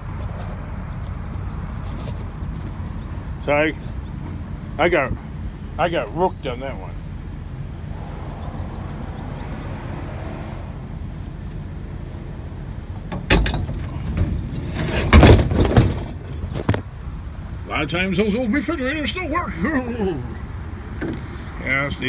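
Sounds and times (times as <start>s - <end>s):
truck engine running: 0.0s - 22.0s
loud clunks and clatter: 12.8s - 17.0s.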